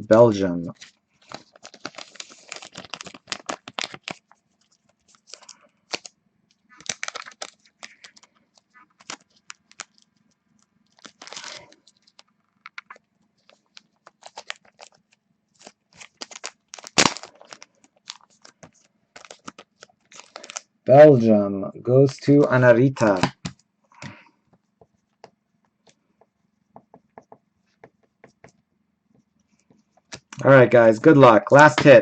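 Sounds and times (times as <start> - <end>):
plastic packaging crinkling: 0.7 - 20.7.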